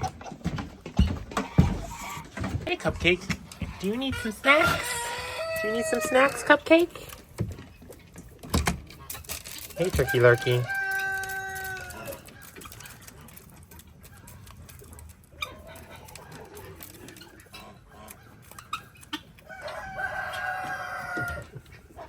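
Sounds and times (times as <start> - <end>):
faint clicks and scratches: 0.0 - 22.0
rooster crowing: 4.4 - 6.6, 9.9 - 12.4, 19.5 - 21.6.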